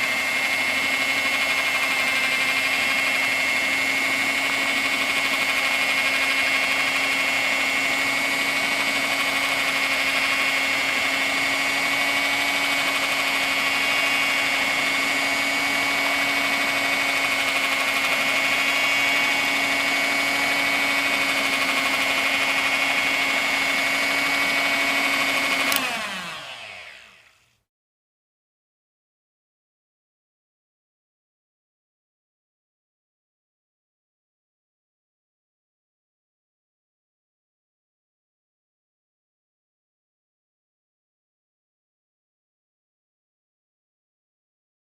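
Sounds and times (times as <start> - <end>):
blender motor whining: 0.0 - 27.7.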